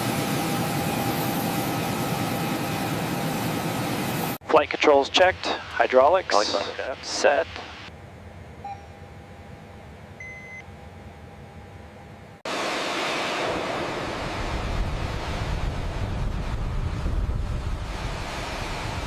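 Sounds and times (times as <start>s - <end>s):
short beep: 8.6s - 9.0s, 10.2s - 10.6s
rushing roar with deep rumble: 12.5s - 19.0s.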